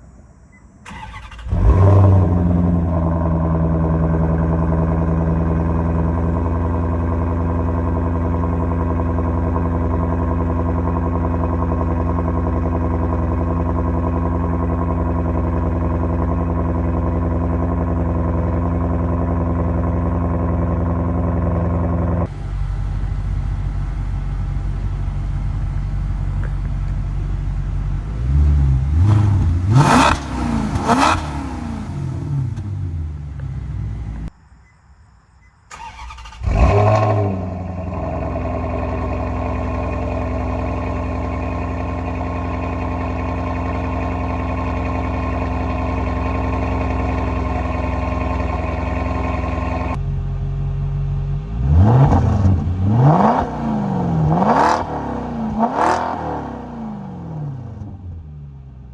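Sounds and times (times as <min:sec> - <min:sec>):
car engine starting: 0:00.5 - 0:34.3, 0:35.7 - 0:58.9
car engine idling and revving: 0:00.9 - 0:34.7, 0:35.7 - 0:58.9.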